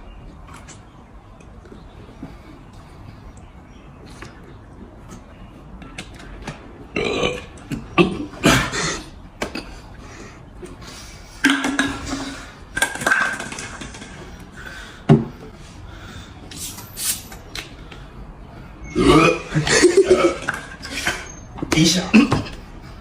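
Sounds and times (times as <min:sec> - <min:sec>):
person burping: 0:06.9 - 0:09.8, 0:18.9 - 0:20.7.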